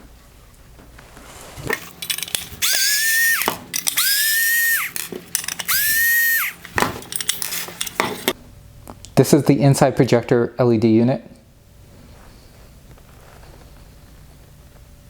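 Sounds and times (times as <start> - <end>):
sharp clicks of parts: 1.7 - 8.4
power driver motor whine: 1.8 - 8.2.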